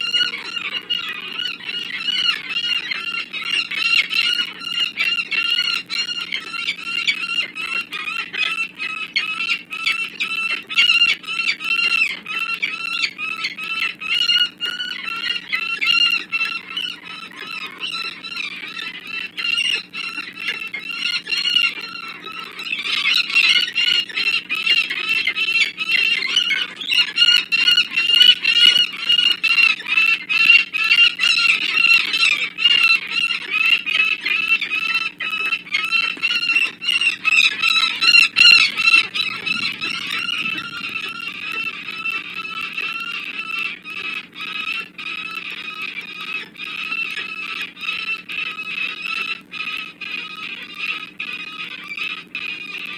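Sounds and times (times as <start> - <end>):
falcons cacking: 0.0 - 52.8.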